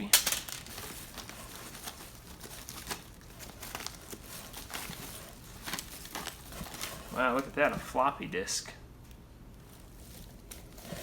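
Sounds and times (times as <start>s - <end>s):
hands sorting items in a purse: 0.0s - 7.9s.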